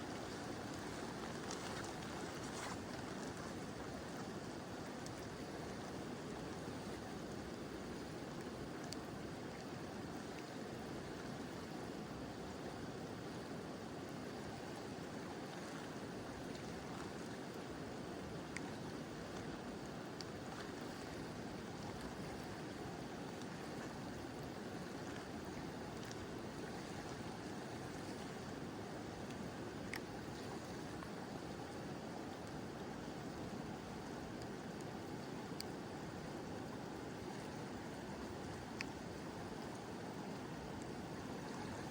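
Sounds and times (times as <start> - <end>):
river water rushing: 0.0 - 12.0, 14.2 - 41.9
gentle rain falling: 0.0 - 41.9
faint high ticks: 8.3 - 9.7, 29.2 - 31.2, 34.0 - 35.8, 38.5 - 39.7.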